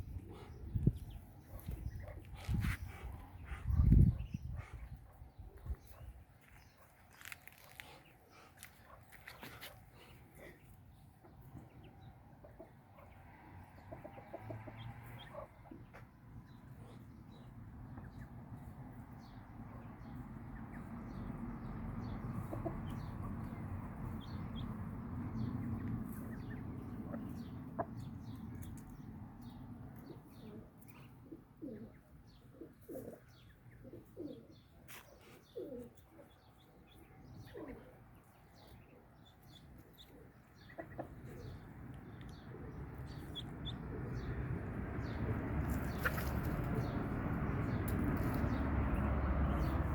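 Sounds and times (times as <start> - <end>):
poultry clucking: 7.2 - 16.1, 22.1 - 24.4, 25.4 - 28.8, 39.6 - 41.7, 45.6 - 47.0.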